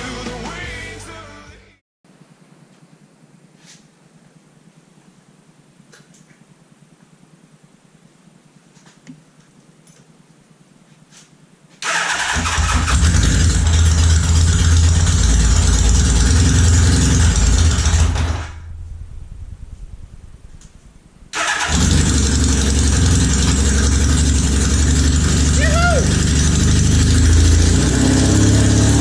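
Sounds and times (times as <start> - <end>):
motorcycle engine running: 12.2 - 29.0.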